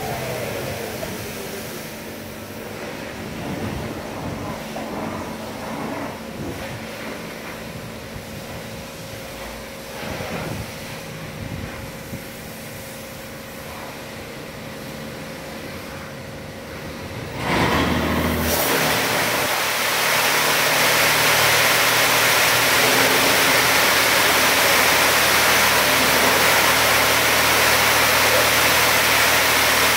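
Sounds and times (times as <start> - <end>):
loud rushing whirring noise: 16.7 - 29.9.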